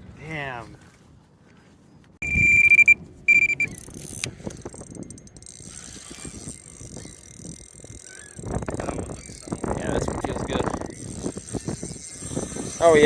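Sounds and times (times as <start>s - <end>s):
bite alarm high tone: 2.2s - 3.7s
fishing reel clicking and knocking: 3.7s - 13.0s.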